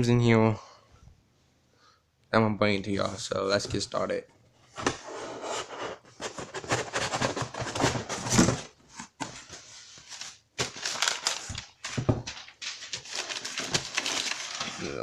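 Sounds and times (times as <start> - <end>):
packaging rustling and crinkling: 6.3 - 15.0.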